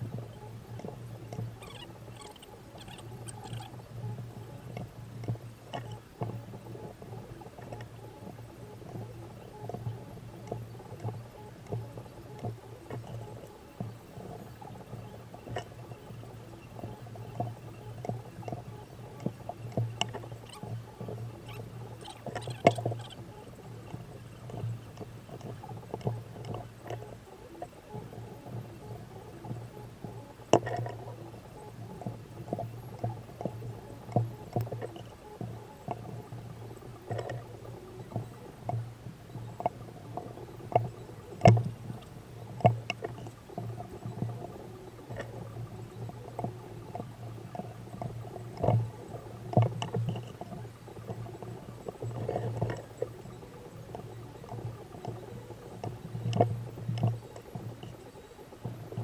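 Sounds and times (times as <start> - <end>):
low electrical hum: 0.0 - 59.0.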